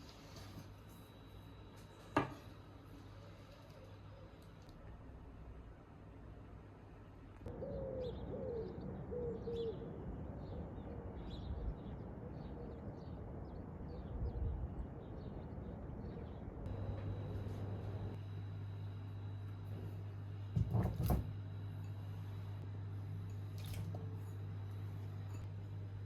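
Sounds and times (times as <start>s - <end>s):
dove cooing: 7.5s - 10.6s.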